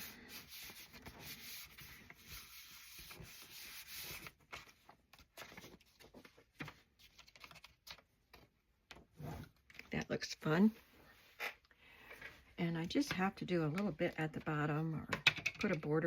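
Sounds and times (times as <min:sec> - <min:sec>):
hands rubbing paper: 0:00.0 - 0:04.7
paper rustling: 0:00.3 - 0:08.5.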